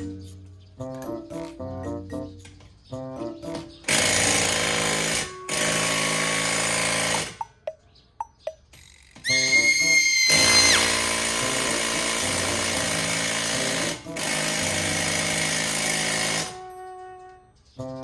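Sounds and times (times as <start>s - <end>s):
power tool whining: 3.8s - 7.4s, 9.3s - 16.7s.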